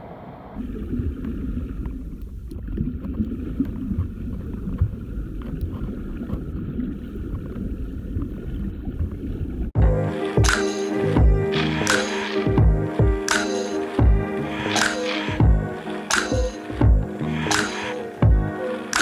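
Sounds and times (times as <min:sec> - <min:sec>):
water rushing: 0:09.8 - 0:19.0.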